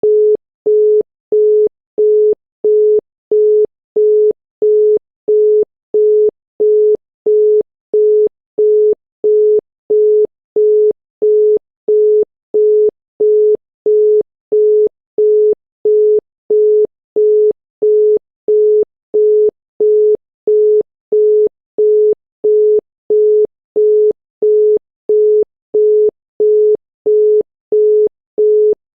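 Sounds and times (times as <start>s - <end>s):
telephone busy tone beeping: 0.0s - 28.8s.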